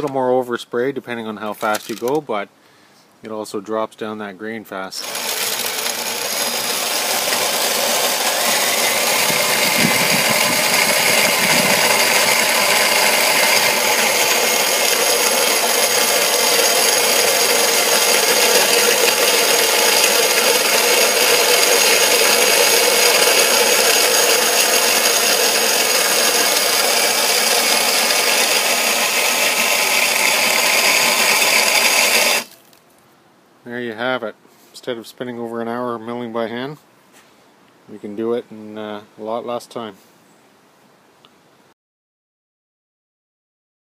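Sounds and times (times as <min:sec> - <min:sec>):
grain mill grinding and rattling: 0:01.6 - 0:02.0, 0:05.0 - 0:32.8
drill motor whine: 0:05.0 - 0:32.6.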